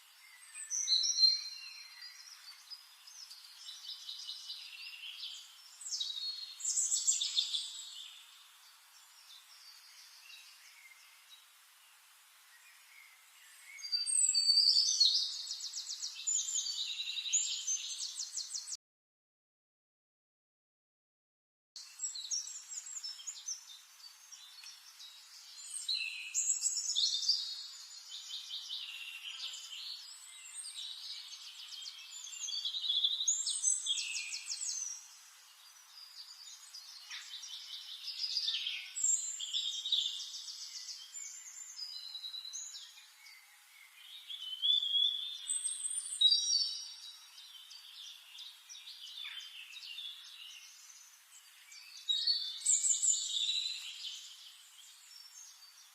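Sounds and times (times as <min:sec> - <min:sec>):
songbirds singing: 0:00.0 - 0:18.8, 0:21.8 - 0:55.9.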